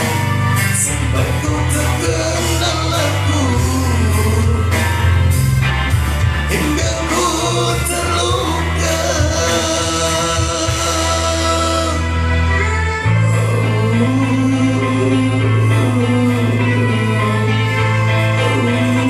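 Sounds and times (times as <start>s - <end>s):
person singing: 0.0s - 5.6s, 6.3s - 19.0s
band with heavy bass and drums: 0.0s - 19.0s.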